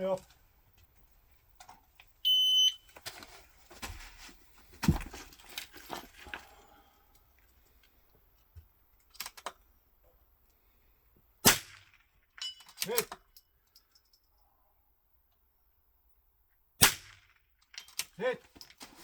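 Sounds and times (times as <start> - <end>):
shot timer beep: 2.3 - 2.8
rustling of gear: 2.9 - 6.8.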